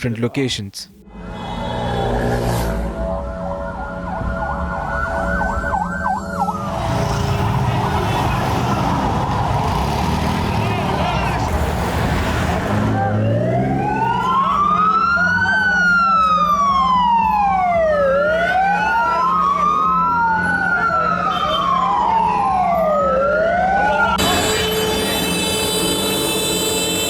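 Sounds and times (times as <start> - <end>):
street noise: 1.0 - 27.0
emergency vehicle sirens wailing: 3.0 - 27.0
steady engine hum: 6.4 - 14.4.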